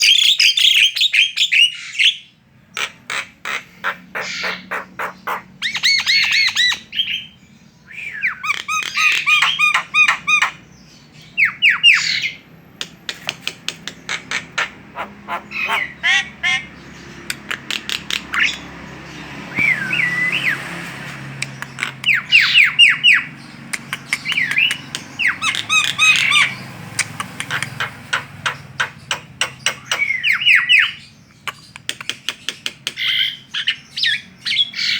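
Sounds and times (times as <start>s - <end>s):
myna chattering: 12.8s - 16.7s, 21.4s - 30.2s.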